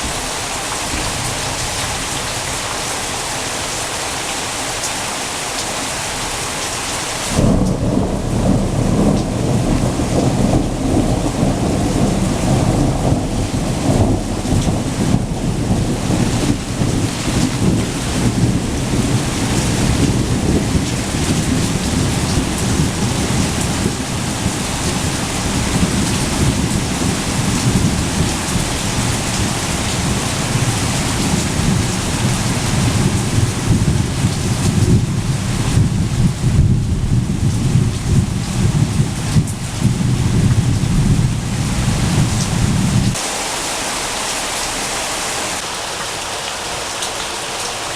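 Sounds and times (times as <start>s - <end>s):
heavy rain hissing: 0.0s - 47.9s
rumble of thunder: 7.3s - 43.2s.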